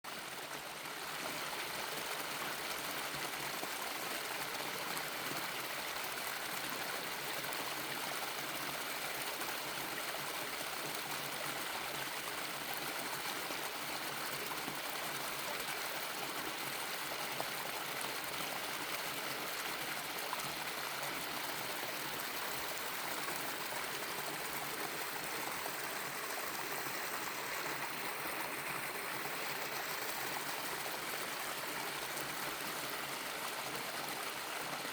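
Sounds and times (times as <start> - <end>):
waterfall and stream rushing: 17.0 - 34.9.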